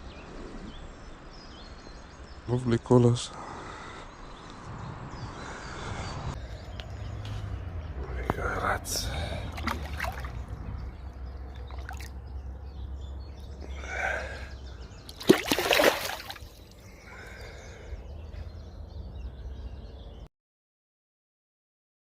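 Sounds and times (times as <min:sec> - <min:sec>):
water sloshing: 0:09.1 - 0:12.3, 0:15.0 - 0:16.8
loud water splash: 0:09.5 - 0:10.4, 0:15.1 - 0:16.6.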